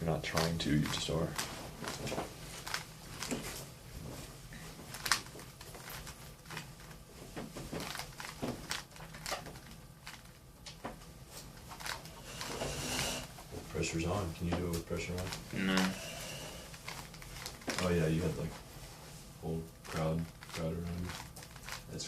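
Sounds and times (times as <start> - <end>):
puzzle cube plastic clicks: 7.8 - 10.8, 11.7 - 12.6, 19.9 - 21.9.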